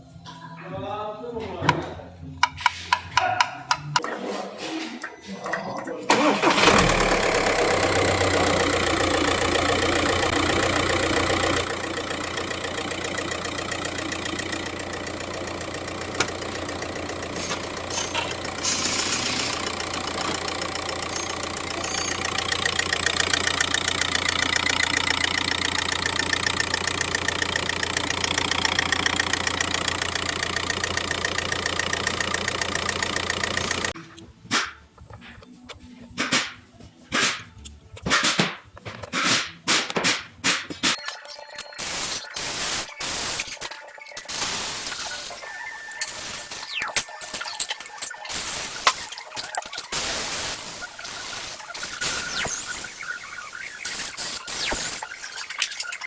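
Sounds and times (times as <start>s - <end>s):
diesel engine running: 6.1s - 34.0s, 41.8s - 56.0s
fast rhythmic engine ticking: 6.2s - 34.0s, 41.7s - 56.0s.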